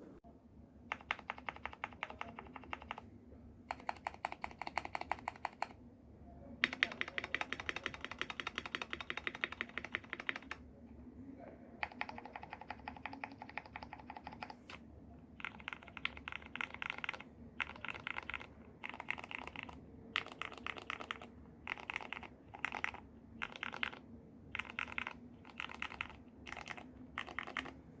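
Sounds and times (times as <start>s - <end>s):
mechanical keyboard typing: 0.9s - 3.0s, 3.7s - 5.8s, 6.6s - 10.6s, 11.8s - 14.7s, 15.4s - 27.8s.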